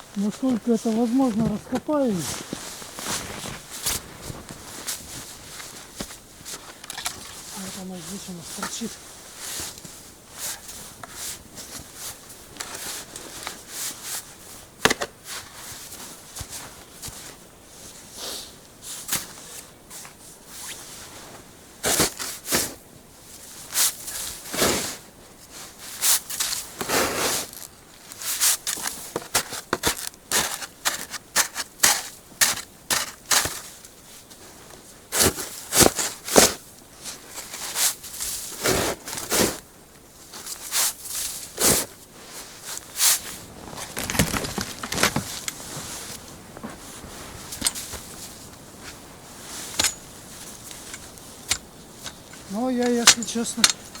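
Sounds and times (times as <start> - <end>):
shovel crunching in snow: 0.1 - 14.3, 21.8 - 22.8, 23.7 - 25.0, 25.9 - 33.8, 35.1 - 39.7, 40.3 - 54.0.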